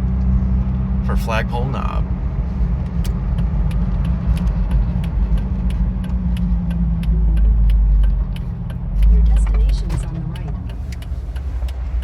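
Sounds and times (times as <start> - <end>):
car engine and road rumble: 0.0 - 12.0
light regular ticking: 2.7 - 12.0.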